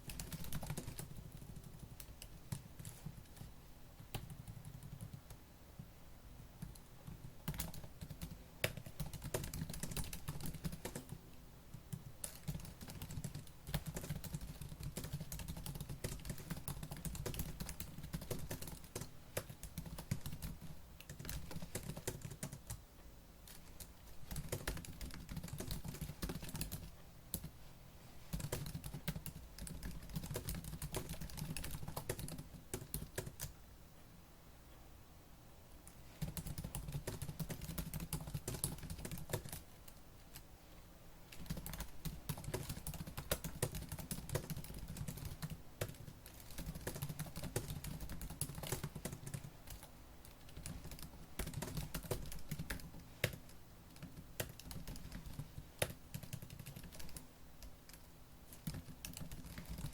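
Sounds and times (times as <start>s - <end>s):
laptop keyboard typing: 0.0s - 5.4s, 6.6s - 22.8s, 23.4s - 27.5s, 28.2s - 33.5s, 36.1s - 40.5s, 41.3s - 59.9s.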